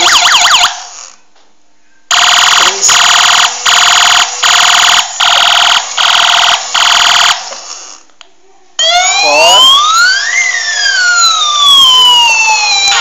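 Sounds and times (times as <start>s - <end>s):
toy car buzzy alarm tone: 2.1s - 7.4s, 8.8s - 13.0s.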